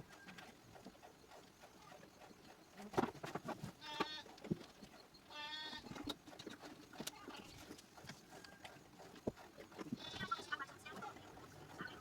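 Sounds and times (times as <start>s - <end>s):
goat bleating: 3.8s - 4.3s, 5.3s - 5.9s, 10.0s - 10.7s.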